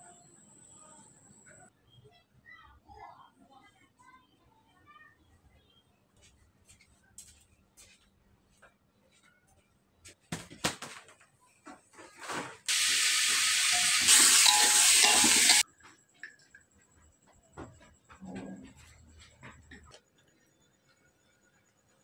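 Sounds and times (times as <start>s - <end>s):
steady hiss: 12.7s - 15.6s.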